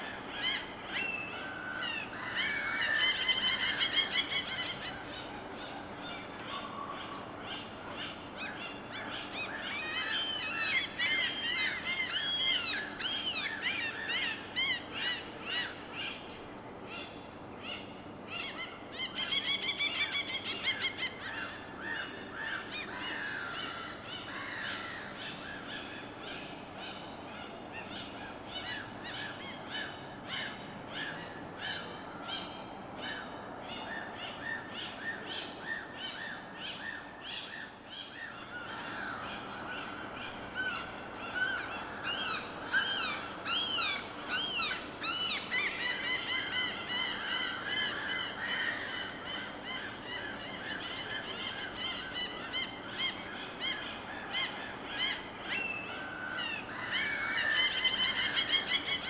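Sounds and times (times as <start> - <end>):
birds calling: 17.8 - 59.0.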